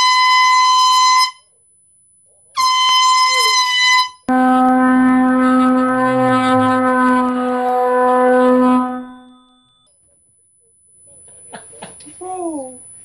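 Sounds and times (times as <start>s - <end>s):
canned air horn blasts: 0.0s - 1.5s, 2.6s - 9.8s.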